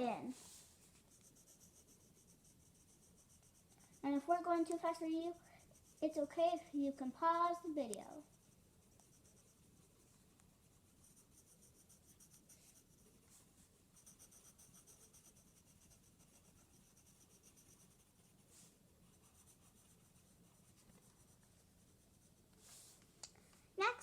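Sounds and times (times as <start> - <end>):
drawing tool scratching on paper: 0.9 - 6.4, 8.2 - 13.2, 13.9 - 22.6.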